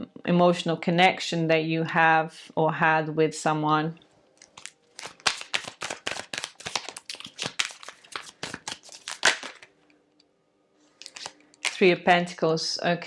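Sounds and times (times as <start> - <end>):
cards being shuffled: 4.4 - 9.7, 11.0 - 11.9.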